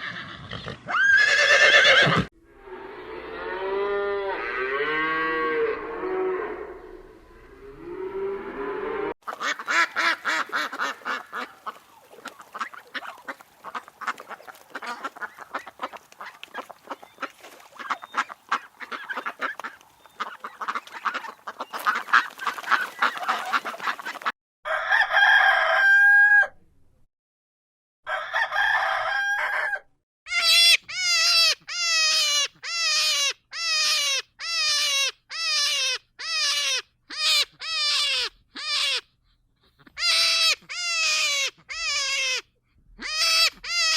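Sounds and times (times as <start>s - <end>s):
chickens clucking and squawking: 9.2s - 26.0s
rooster crowing: 24.7s - 26.6s, 28.1s - 29.9s.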